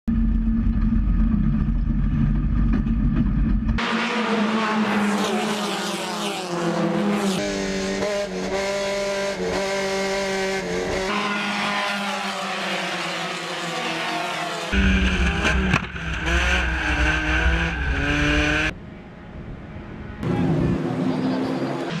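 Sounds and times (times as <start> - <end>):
race car engines shifting gears: 3.8 - 18.7, 20.2 - 22.0.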